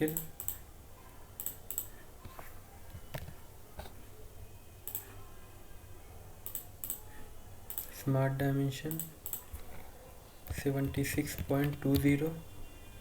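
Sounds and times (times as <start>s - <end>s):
computer mouse clicking: 0.0s - 0.6s, 1.4s - 1.9s, 4.8s - 5.1s, 6.4s - 7.0s, 7.7s - 8.0s, 8.9s - 9.7s.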